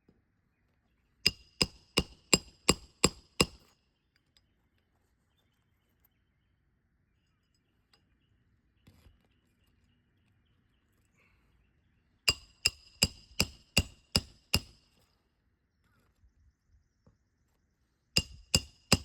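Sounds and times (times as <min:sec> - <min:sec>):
hammer striking roofing nail: 0:01.3 - 0:03.6, 0:12.3 - 0:14.8, 0:18.2 - 0:19.0.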